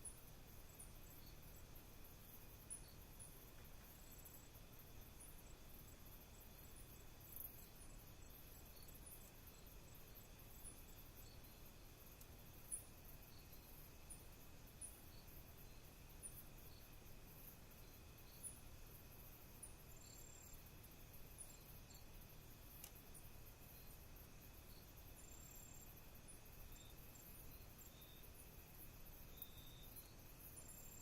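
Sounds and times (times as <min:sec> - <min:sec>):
insect chorus: 0:00.0 - 0:31.0
thin steady whine: 0:00.0 - 0:31.0
faint click: 0:22.8 - 0:23.1.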